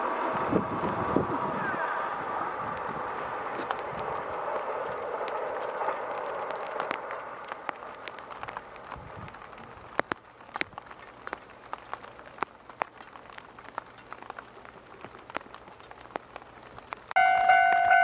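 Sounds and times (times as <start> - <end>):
faint ticks and clicks: 2.7 - 18.0
level crossing warning bell: 17.2 - 18.0.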